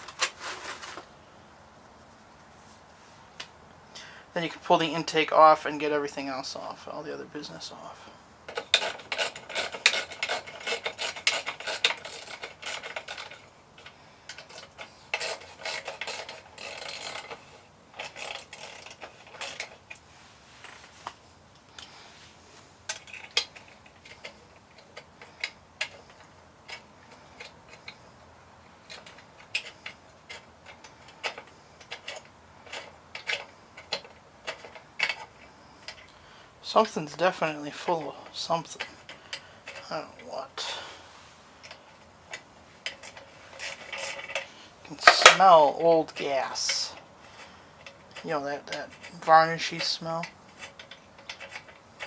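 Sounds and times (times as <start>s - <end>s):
small metal parts clinking: 8.5s - 20.0s, 22.9s - 36.2s, 41.6s - 52.0s.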